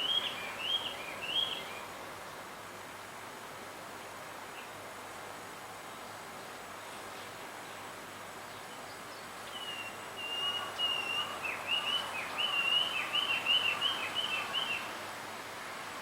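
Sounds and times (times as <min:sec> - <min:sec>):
bird whistling song: 0:00.0 - 0:01.8, 0:09.5 - 0:14.9
steady background hiss: 0:00.0 - 0:16.0.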